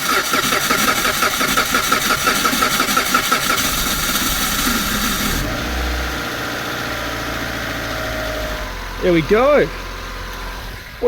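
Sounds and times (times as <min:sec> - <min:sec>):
engine starter cranking: 0:00.0 - 0:05.9
car engine idling: 0:00.0 - 0:11.0.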